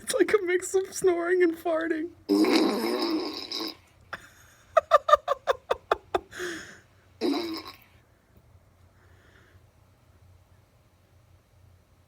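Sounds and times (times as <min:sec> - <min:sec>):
person laughing: 0:04.1 - 0:06.8
person breathing: 0:06.3 - 0:07.0, 0:08.9 - 0:09.7.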